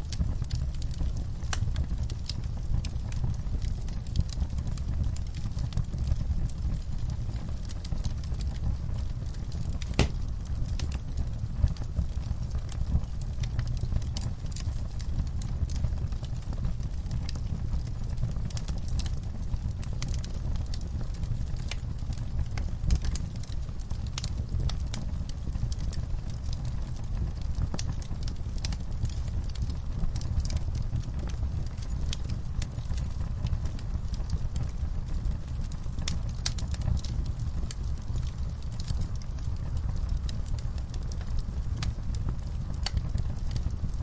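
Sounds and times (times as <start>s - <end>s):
low rumble of flames: 0.0s - 44.0s
wood fire crackling: 0.0s - 44.0s
sharp pops and snaps: 9.8s - 10.3s.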